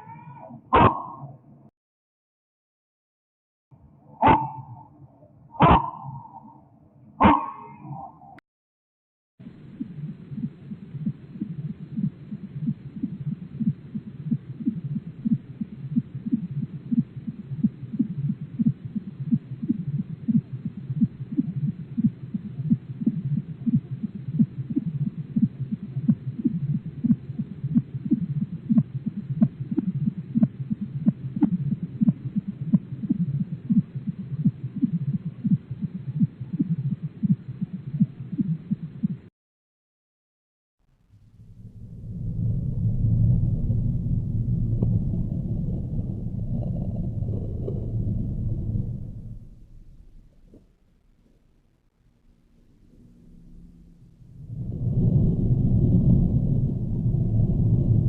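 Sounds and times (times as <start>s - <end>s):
low throbbing pulses: 9.4s - 39.2s, 41.1s - 50.6s, 52.4s - 58.0s.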